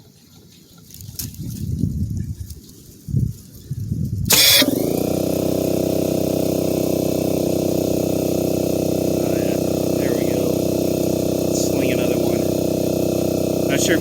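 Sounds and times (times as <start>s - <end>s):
air compressor humming: 4.3s - 14.0s
loud air blast: 4.3s - 14.0s.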